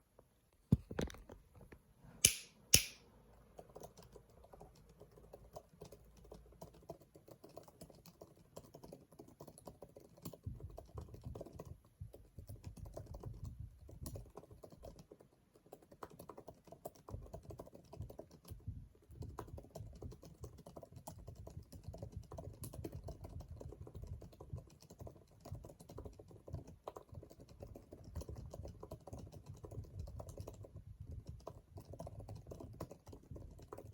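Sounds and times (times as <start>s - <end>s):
sharp loud clicks: 2.2s - 3.0s
mechanical keyboard typing: 3.6s - 33.9s.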